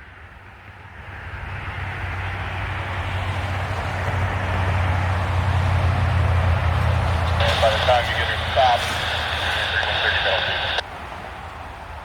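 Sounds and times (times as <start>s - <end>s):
vehicle engine drone: 3.8s - 10.8s.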